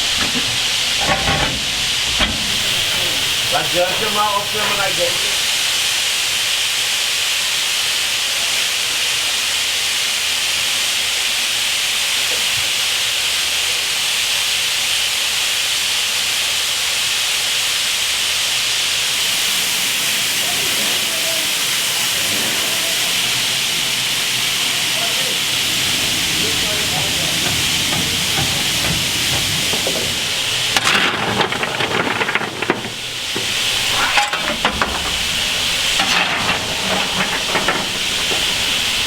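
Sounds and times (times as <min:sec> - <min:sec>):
steam locomotive hissing: 0:00.0 - 0:39.0
faint voices: 0:19.8 - 0:39.0.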